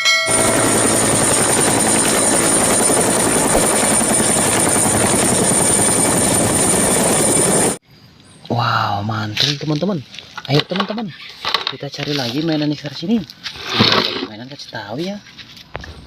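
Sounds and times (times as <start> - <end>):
high whine: 0.0 - 7.8.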